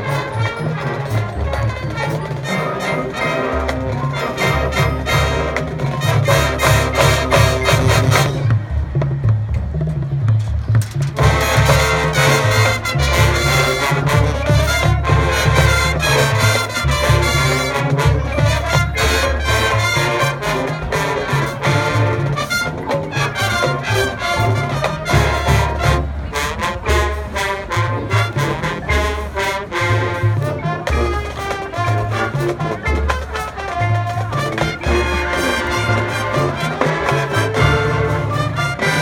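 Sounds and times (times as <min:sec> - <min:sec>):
drum beat: 0:00.0 - 0:39.0
trumpets and trombones: 0:00.0 - 0:39.0.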